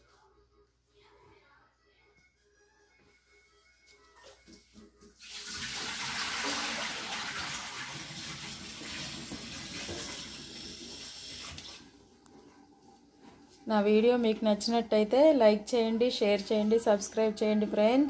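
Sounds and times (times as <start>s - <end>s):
tap water running hiss: 5.2s - 12.0s.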